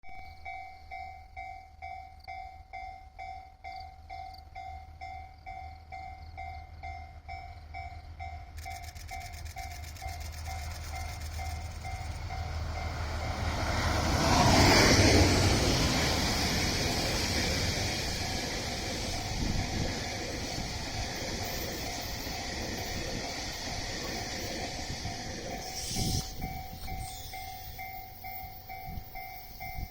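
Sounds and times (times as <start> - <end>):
train passing close by: 0.0 - 29.9.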